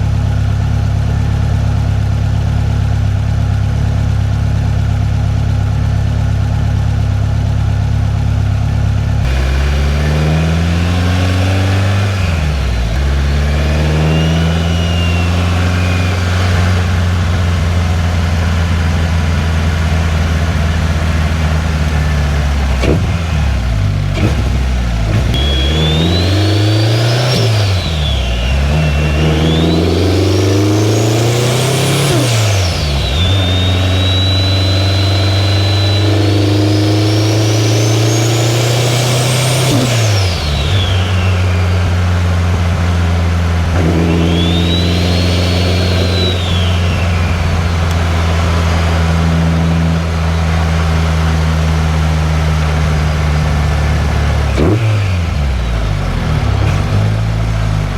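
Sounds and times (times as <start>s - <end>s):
high turbo whine: 0.0s - 57.9s
car engine revving: 8.1s - 57.9s.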